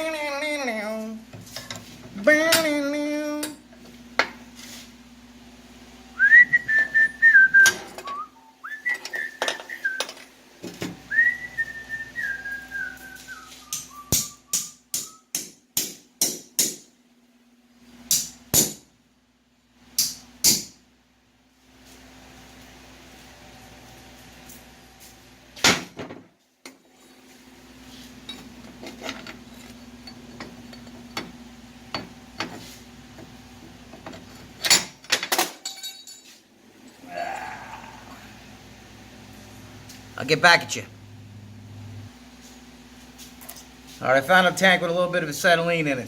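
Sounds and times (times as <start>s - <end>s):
person whistling: 6.2s - 10.1s, 11.1s - 15.3s.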